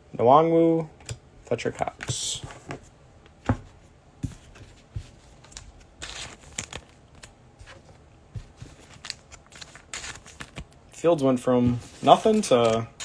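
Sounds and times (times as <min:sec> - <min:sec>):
trading cards flicking and rustling: 0:04.2 - 0:13.0.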